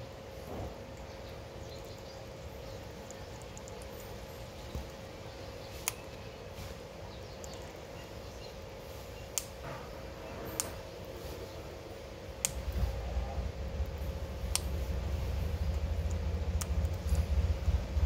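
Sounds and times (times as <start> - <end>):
faint steady hum: 0.0 - 18.0
low rumble: 12.4 - 18.0.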